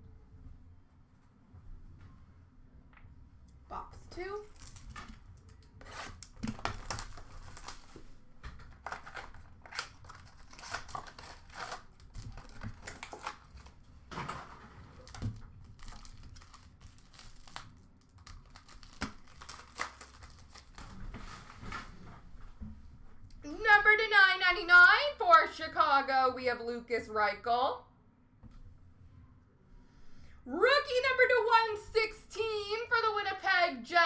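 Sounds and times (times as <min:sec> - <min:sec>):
packaging tearing and crinkling: 0:04.5 - 0:21.3.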